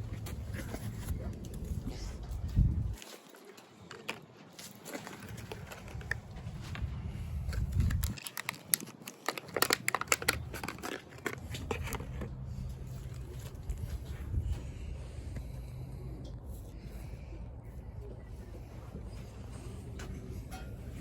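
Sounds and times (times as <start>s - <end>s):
low rumble: 0.0s - 3.0s
handling rustling: 0.0s - 14.7s.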